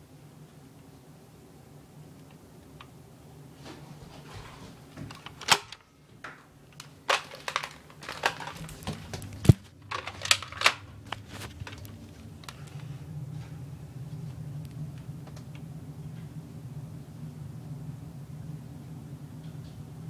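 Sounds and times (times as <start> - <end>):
faint steady hum: 0.0 - 20.0
sharp clicks and knocks: 5.0 - 12.8.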